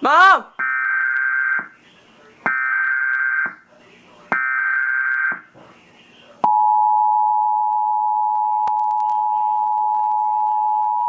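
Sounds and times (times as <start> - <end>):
two-tone attention signal: 6.5 - 11.0.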